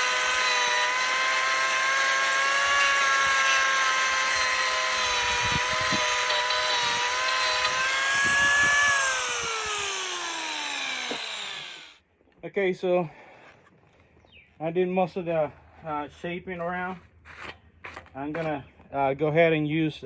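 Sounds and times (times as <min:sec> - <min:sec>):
angle grinder cutting wood: 0:00.0 - 0:12.0.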